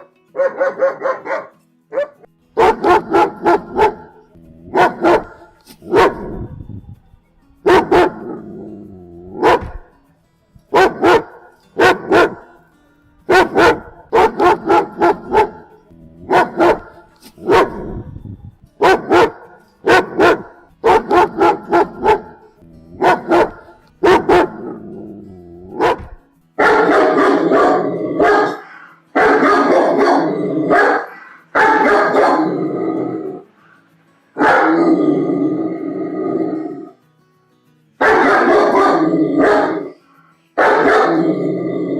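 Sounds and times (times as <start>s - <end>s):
dog barking: 0.0s - 6.6s, 7.6s - 8.4s, 9.3s - 9.9s, 10.7s - 12.5s, 13.3s - 18.1s, 18.8s - 24.8s, 25.7s - 32.6s, 34.4s - 35.0s, 38.0s - 40.0s, 40.6s - 41.3s
dog snarling growl-barks: 2.6s - 6.6s, 7.7s - 9.8s, 13.3s - 18.1s, 18.8s - 33.5s, 34.4s - 37.0s, 38.0s - 40.0s, 40.6s - 41.9s.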